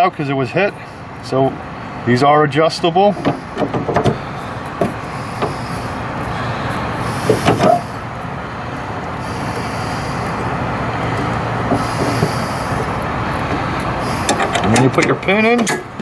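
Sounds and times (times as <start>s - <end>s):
bus engine idling: 0.0s - 16.0s.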